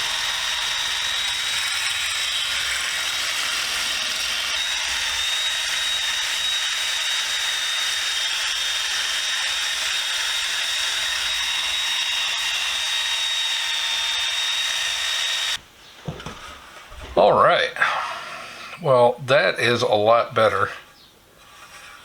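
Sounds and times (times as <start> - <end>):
wire wheel scrubbing metal: 0.0 - 15.6.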